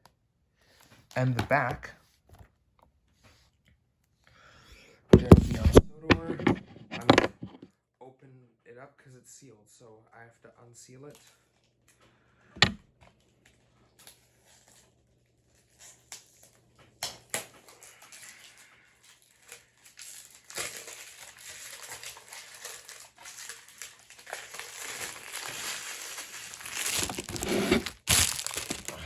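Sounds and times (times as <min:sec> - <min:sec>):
plastic wrap crinkling: 0:13.5 - 0:29.0.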